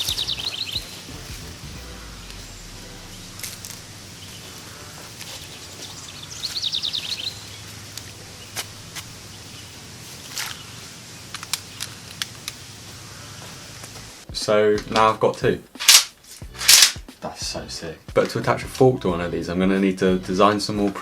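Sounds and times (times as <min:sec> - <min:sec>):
bird twittering: 0:00.0 - 0:13.9
sharp clicks: 0:11.3 - 0:12.7.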